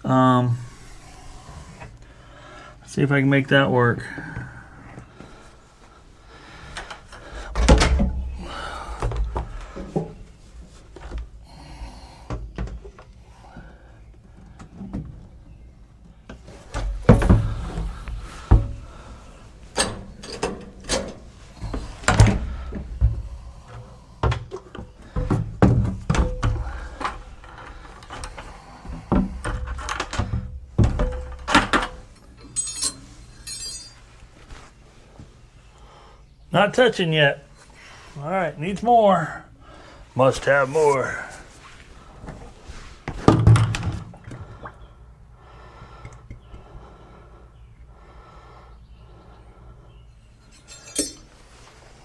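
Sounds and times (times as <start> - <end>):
knocks and thuds of jugs handled: 6.7 - 11.4, 16.2 - 32.6, 42.2 - 44.9, 45.9 - 46.8.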